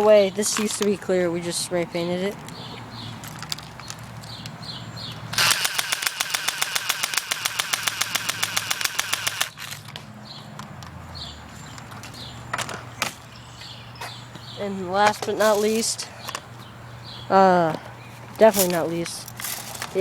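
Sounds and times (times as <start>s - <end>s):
airsoft rifle rapid fire: 5.3s - 9.6s.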